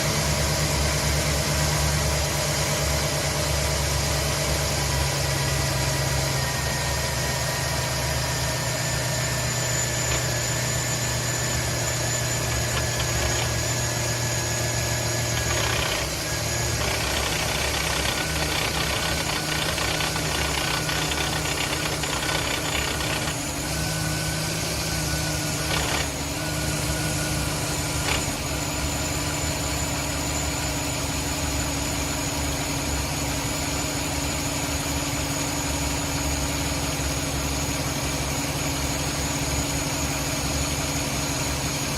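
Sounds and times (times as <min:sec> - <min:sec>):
truck engine idling: 0:16.8 - 0:23.6.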